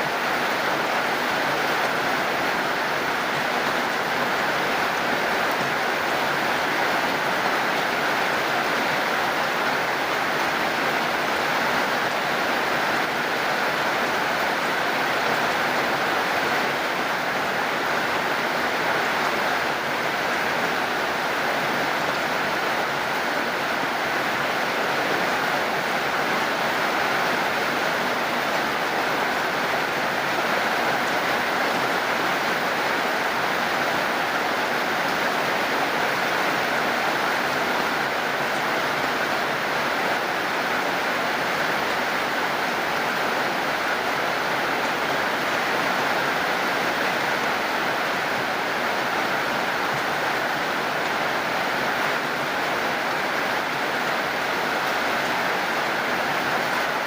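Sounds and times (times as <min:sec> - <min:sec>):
heavy rain: 0:00.0 - 0:57.0.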